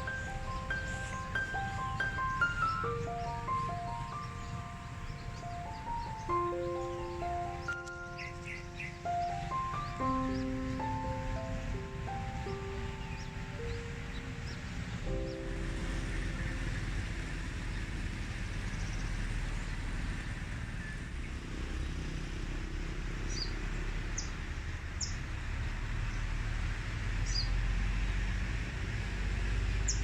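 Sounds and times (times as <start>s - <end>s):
high bird chirps: 0.0s - 18.0s
distant road traffic rumble: 0.0s - 30.0s.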